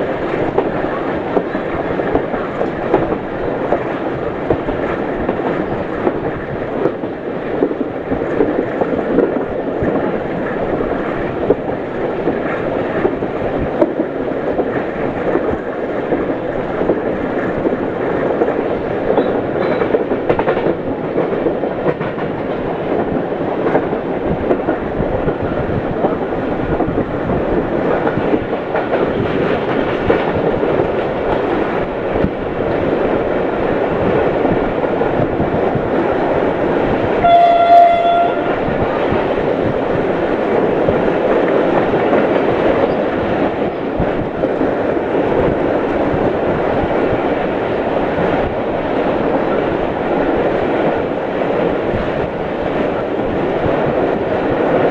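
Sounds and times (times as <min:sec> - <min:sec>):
train wheels clickety-clack: 0:00.0 - 0:54.9
train horn blast: 0:37.2 - 0:38.6.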